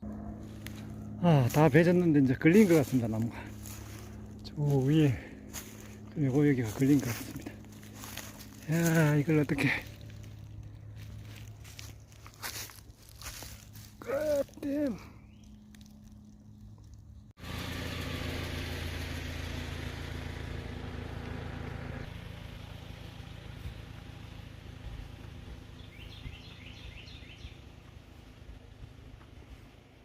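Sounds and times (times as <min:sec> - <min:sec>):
engine running steadily: 0:00.0 - 0:30.0
bird chirping: 0:14.3 - 0:17.3, 0:25.7 - 0:27.9.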